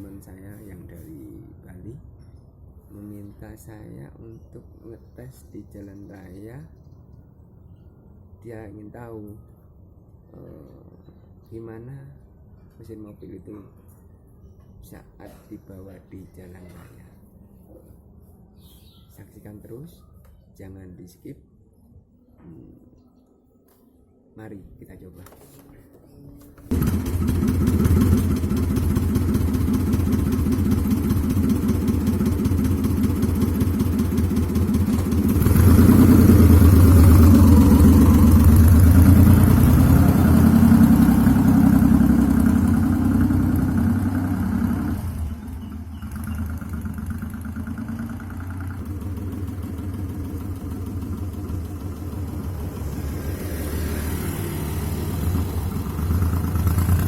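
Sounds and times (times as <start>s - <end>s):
motorcycle engine running: 26.7s - 57.0s.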